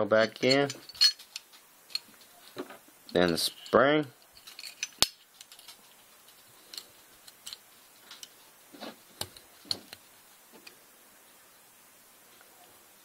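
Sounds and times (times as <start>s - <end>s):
pistol parts clicking: 0.2s - 2.2s, 6.7s - 8.4s.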